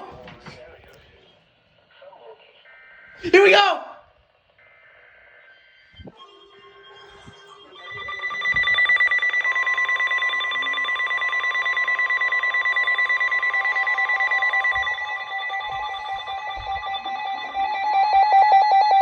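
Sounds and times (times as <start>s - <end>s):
rapidly pulsing electronic alarm: 4.6s - 19.0s
steady long warning tone: 4.7s - 19.0s
beeping tone: 7.3s - 19.0s.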